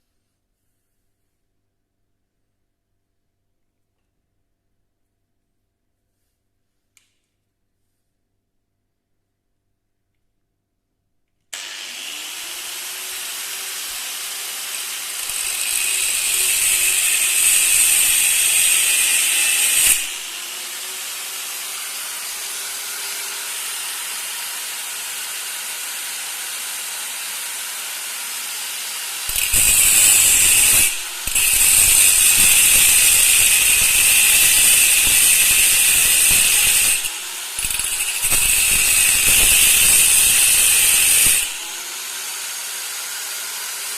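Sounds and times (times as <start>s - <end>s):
power tool motor whining: 11.6s - 43.9s
tool rasping on metal: 12.0s - 24.6s, 29.3s - 43.9s.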